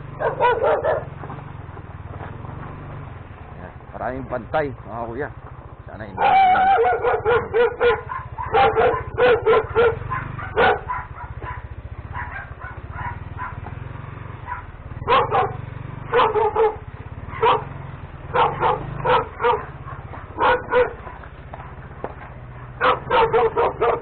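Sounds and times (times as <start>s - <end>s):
dogs barking: 0.0s - 1.2s, 6.0s - 13.8s, 14.4s - 24.0s.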